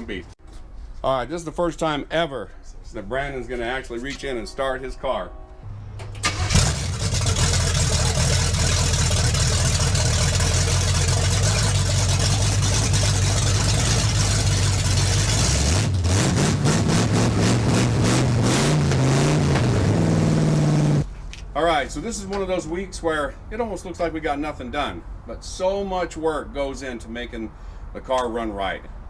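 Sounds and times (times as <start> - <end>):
engine idling and revving: 6.2 - 21.1.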